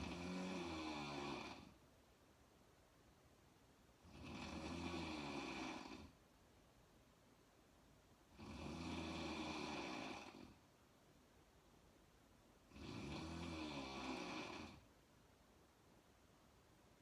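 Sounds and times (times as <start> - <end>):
woman snoring: 0.0 - 1.8, 4.0 - 6.2, 8.3 - 10.6, 12.7 - 14.9
quiet breathing: 4.0 - 6.2, 8.3 - 10.7, 12.6 - 15.0.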